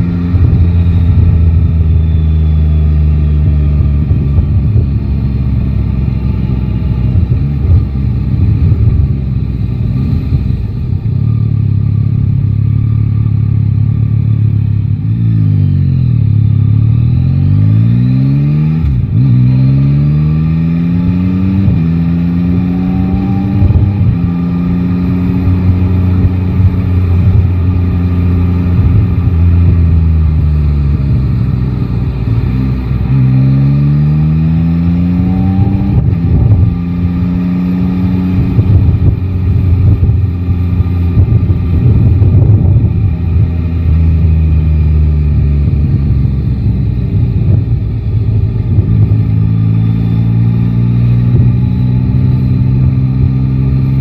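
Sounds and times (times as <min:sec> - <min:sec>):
motorcycle engine accelerating: 0:00.0 - 0:54.0
quick gear upshifts: 0:00.0 - 0:54.0
wind buffeting microphone: 0:37.9 - 0:44.2.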